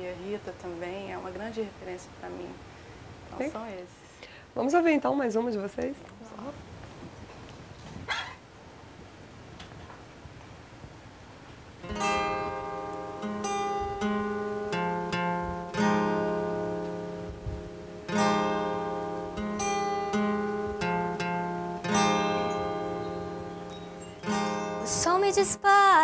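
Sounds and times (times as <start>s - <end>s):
acoustic guitar strumming chords: 11.8s - 26.0s.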